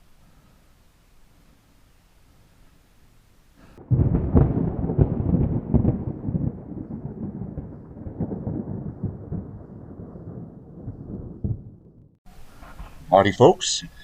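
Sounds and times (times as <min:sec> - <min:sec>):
thunder crack and rumble: 0:03.8 - 0:12.2.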